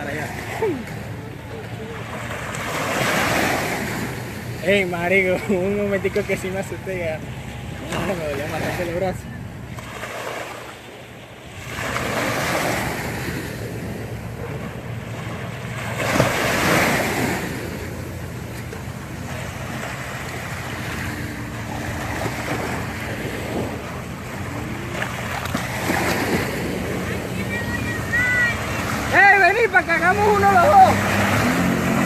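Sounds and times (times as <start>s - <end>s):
jet ski engine hum: 0.0s - 32.0s
wind on microphone: 21.0s - 27.5s.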